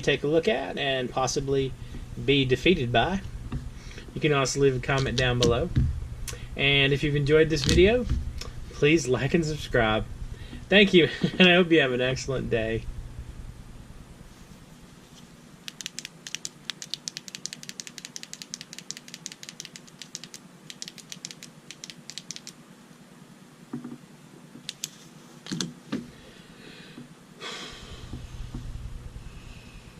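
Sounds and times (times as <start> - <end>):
rapid small sharp clicks: 15.6 - 22.6, 24.6 - 25.6.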